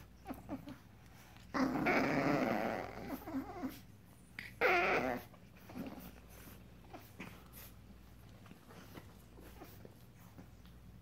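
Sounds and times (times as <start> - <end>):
puppies growling: 0.0 - 11.0
high-pitched puppy cry: 1.5 - 6.0.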